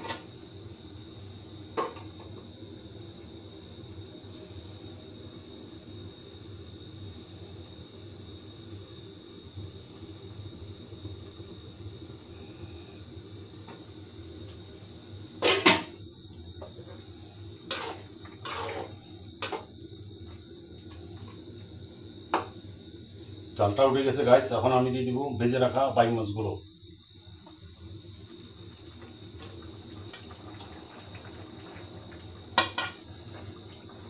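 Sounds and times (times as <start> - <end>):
cooking pot on stove: 0.0 - 2.8, 13.2 - 23.6, 27.3 - 34.0
utensil knocking and scraping pan: 17.7 - 19.7.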